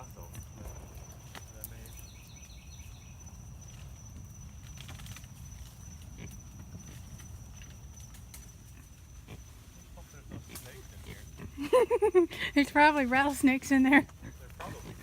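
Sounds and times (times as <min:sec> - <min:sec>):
night insects droning: 0:00.0 - 0:15.0
twigs snapping: 0:04.6 - 0:05.7.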